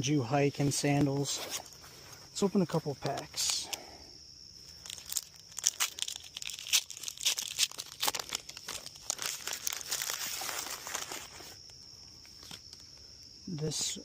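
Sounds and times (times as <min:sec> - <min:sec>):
plastic wrapping crinkling and tearing: 0:04.6 - 0:12.9.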